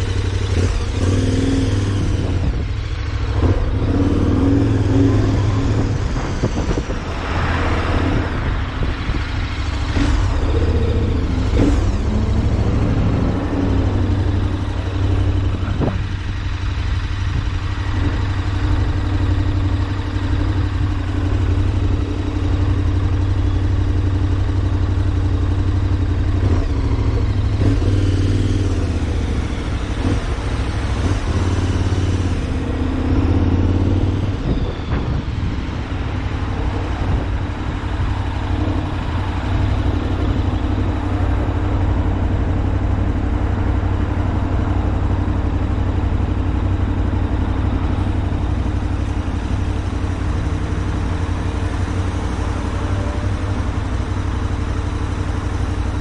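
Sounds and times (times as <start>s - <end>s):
road noise: 0.0s - 56.0s
vehicle engine: 0.0s - 56.0s
wind rumbling on microphone: 1.7s - 18.8s, 28.8s - 42.2s.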